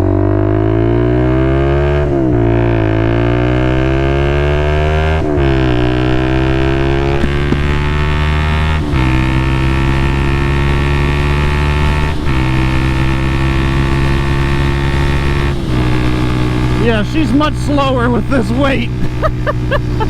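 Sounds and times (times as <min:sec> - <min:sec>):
motorcycle engine at high revs: 0:00.0 - 0:20.0.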